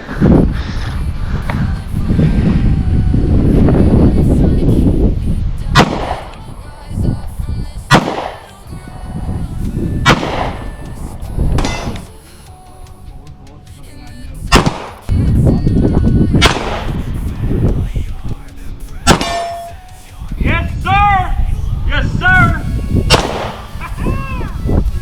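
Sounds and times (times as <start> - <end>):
gunshots with short echo: 5.8 - 6.4, 7.9 - 8.5, 10.0 - 10.8, 14.5 - 15.1, 16.4 - 17.4, 19.1 - 20.1, 23.1 - 23.8.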